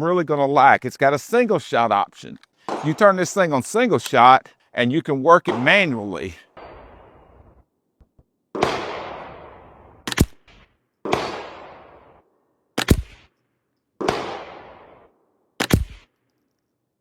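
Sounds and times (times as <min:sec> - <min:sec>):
rifle shots with ringing echo: 0:02.6 - 0:03.4, 0:05.4 - 0:07.7, 0:08.5 - 0:13.3, 0:14.0 - 0:16.2.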